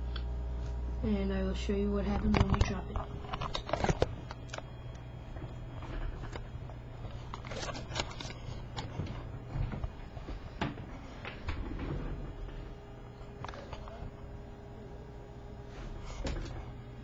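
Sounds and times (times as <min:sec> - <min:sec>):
steady low hum: 0:00.0 - 0:17.0
paper rustling: 0:07.1 - 0:09.2.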